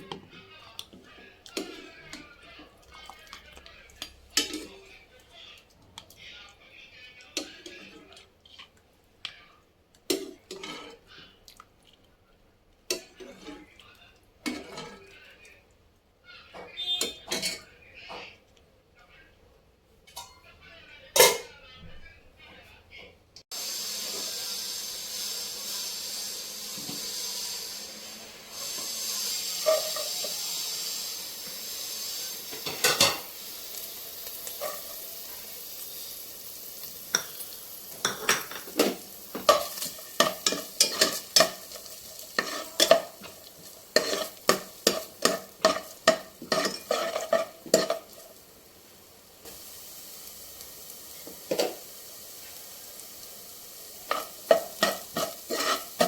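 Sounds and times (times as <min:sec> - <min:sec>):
food sizzling in a pan: 0:00.0 - 0:05.5, 0:23.5 - 0:56.0
metal spoon clinking and scraping: 0:29.6 - 0:30.4, 0:37.1 - 0:48.2, 0:54.1 - 0:56.0.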